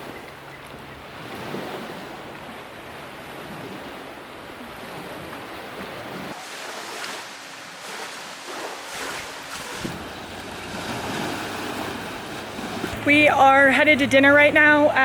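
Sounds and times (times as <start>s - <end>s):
rushing water: 0.0s - 15.0s
wind on microphone: 8.8s - 13.4s.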